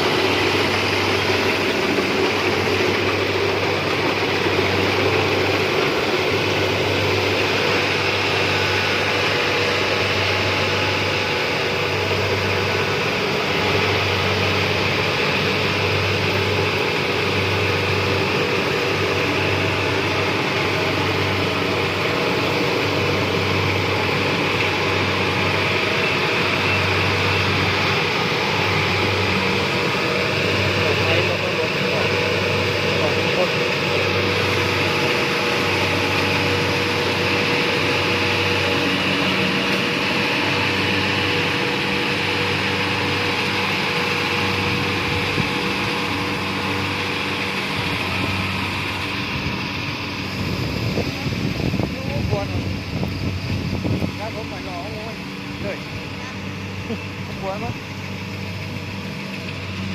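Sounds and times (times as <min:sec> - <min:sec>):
combine harvester running: 0:00.0 - 0:59.9.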